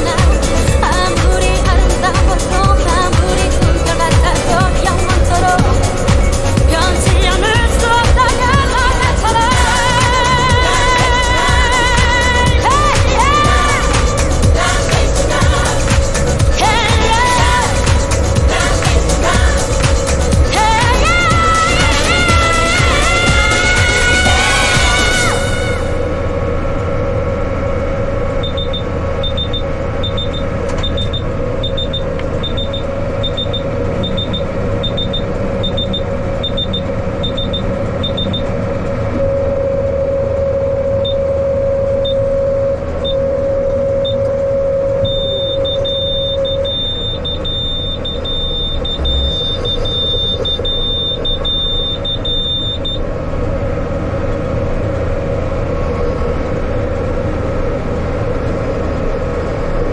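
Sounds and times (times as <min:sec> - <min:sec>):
tractor engine whine: 0:00.0 - 0:59.9
electronic warning beeper: 0:28.4 - 0:53.1.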